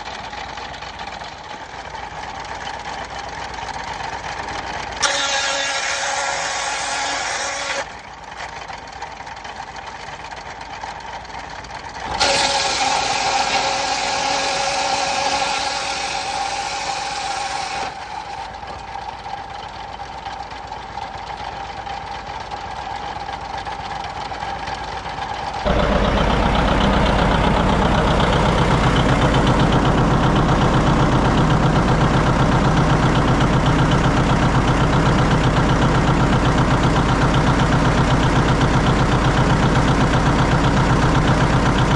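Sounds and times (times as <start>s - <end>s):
sawmill machinery: 0.0s - 41.9s
tractor engines running: 0.0s - 41.9s
steady high whine: 25.6s - 36.1s.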